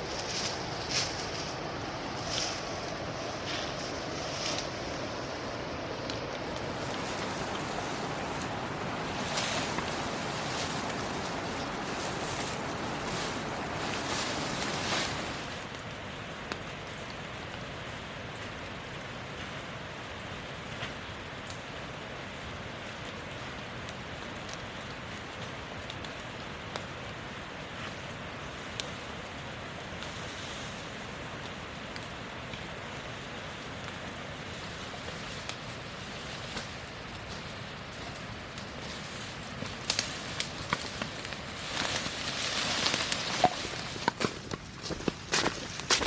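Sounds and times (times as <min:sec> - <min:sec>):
steady rushing noise: 0:00.0 - 0:15.7.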